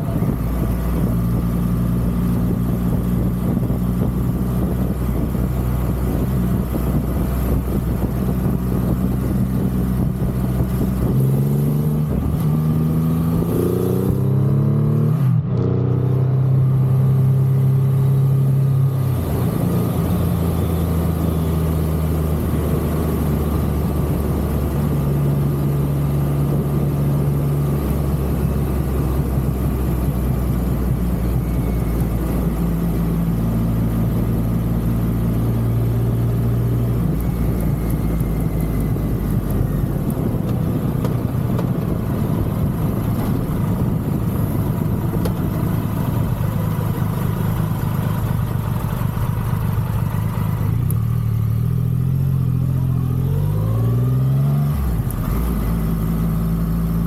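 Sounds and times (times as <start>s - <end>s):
motorcycle engine running: 0.0s - 14.7s, 16.2s - 54.2s
wind and road noise: 0.0s - 57.0s.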